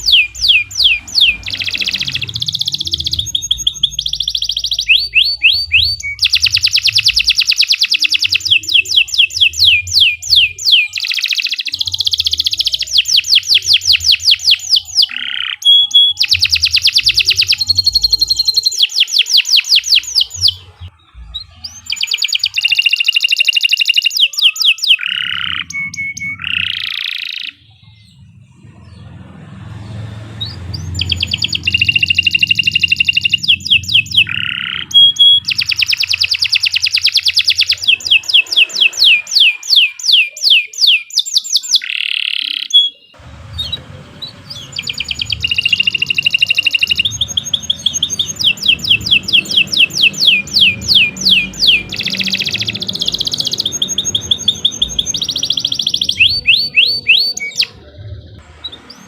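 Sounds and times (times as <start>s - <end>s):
canary singing trills: 0.0s - 59.0s.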